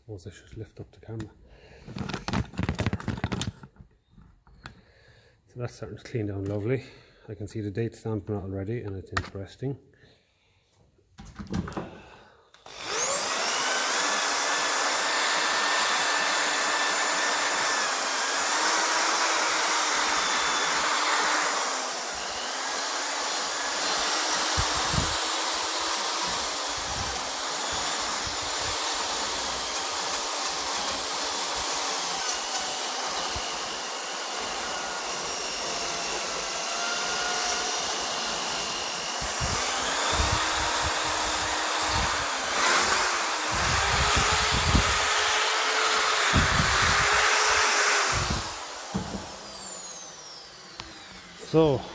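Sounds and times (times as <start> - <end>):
power tool motor whining: 12.6 - 51.9.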